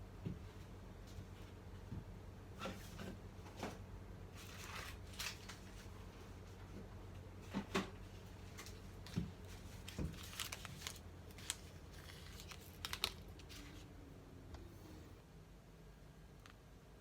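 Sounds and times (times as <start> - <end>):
low steady hum: 0.0 - 17.0
items rustling: 2.6 - 14.0.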